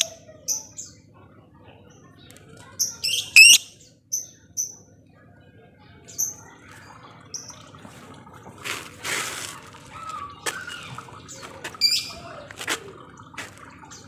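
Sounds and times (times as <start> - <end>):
lovebirds chirping: 2.3 - 4.8
noisy bird squawk: 3.0 - 3.8
sharp high bird call: 3.1 - 3.7.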